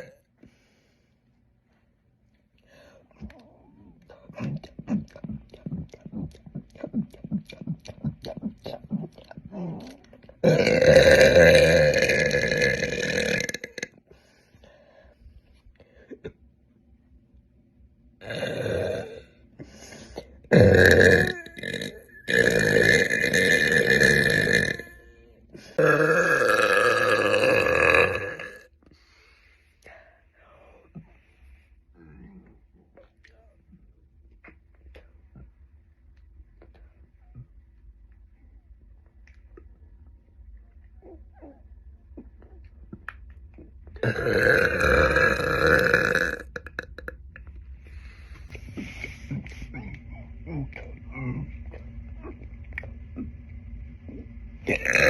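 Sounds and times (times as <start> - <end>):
woman burping loudly: 9.8 - 14.0, 18.2 - 19.2, 20.5 - 25.0, 25.8 - 28.7, 44.0 - 47.2, 54.7 - 55.0.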